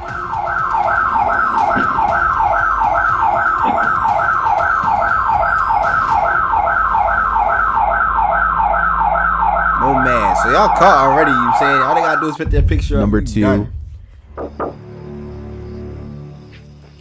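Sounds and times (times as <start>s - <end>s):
security alarm siren whooping: 0.0s - 12.5s.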